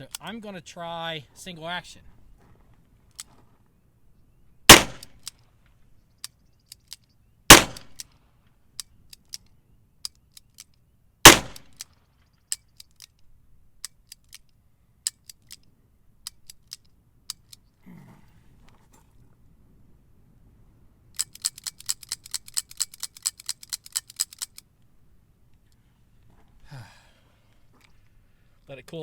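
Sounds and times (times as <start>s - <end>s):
revolver gunshots: 4.7s - 5.2s, 7.5s - 8.0s, 11.2s - 11.8s.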